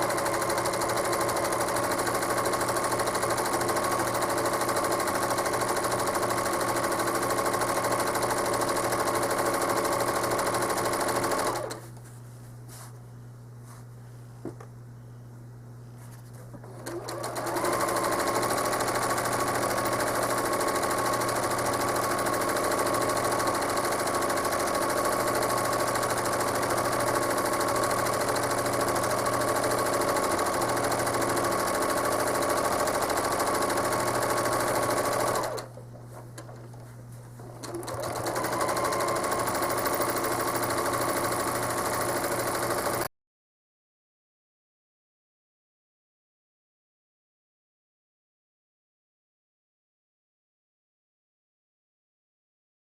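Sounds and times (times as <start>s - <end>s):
sewing machine stitching: 0.0s - 11.8s, 16.5s - 36.8s, 37.4s - 43.1s.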